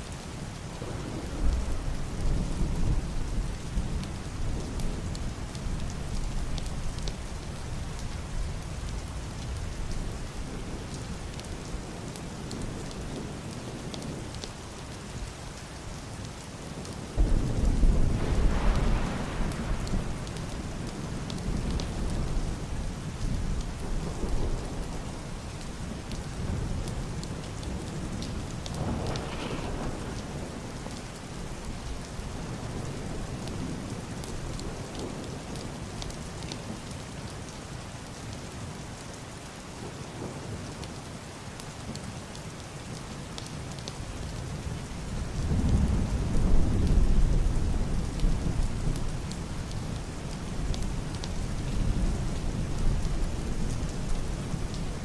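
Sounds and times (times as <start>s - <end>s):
heavy rain on roof and window: 0.0s - 55.0s
rain drop ticks: 1.4s - 32.2s, 33.0s - 39.6s, 41.6s - 44.6s, 45.3s - 55.0s
thunder rumbling: 17.2s - 35.6s, 45.1s - 55.0s.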